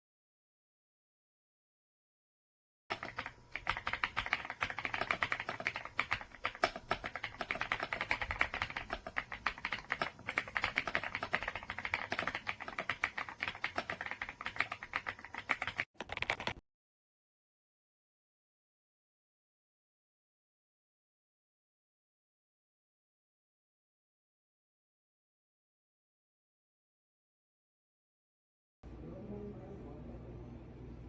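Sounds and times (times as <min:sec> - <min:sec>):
typing on mechanical keyboard: 0:02.9 - 0:16.6.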